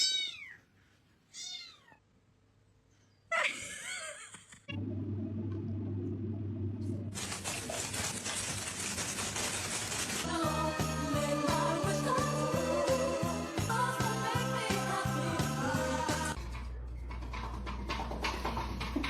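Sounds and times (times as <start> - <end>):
cat meowing: 0.0 - 0.6, 1.3 - 2.0
steady low hum: 4.7 - 7.2.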